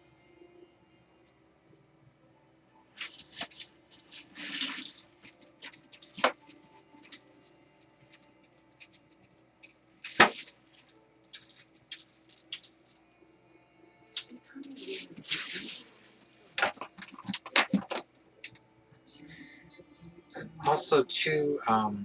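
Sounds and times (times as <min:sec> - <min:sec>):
tools working clay: 0:03.0 - 0:13.0.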